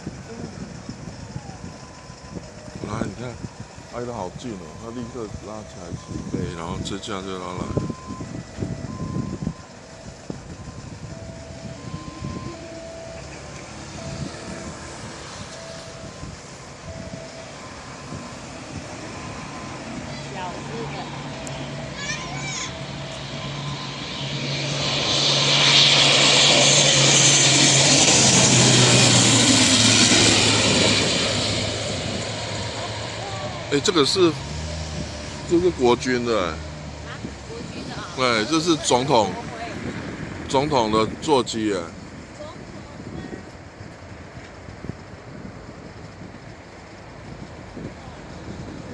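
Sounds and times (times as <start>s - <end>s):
airplane passing low overhead: 0.0s - 41.3s
jet engines rumbling: 0.0s - 48.9s
two-tone electronic beeps: 10.6s - 13.4s.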